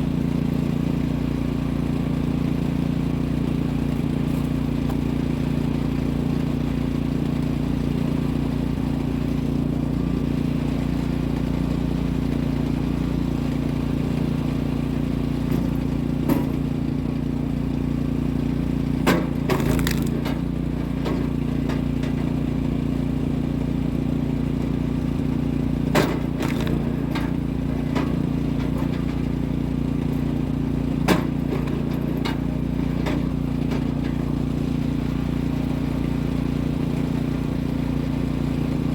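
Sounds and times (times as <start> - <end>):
small gas engine running: 0.0 - 38.9
wood splitting cracks: 19.0 - 20.5, 25.9 - 27.1.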